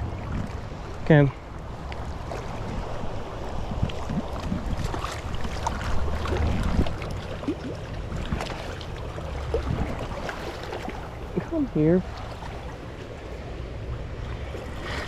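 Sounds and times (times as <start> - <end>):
water splashes: 0.0 - 15.0
wind buffeting microphone: 0.0 - 15.0
river current rushing: 4.8 - 15.0.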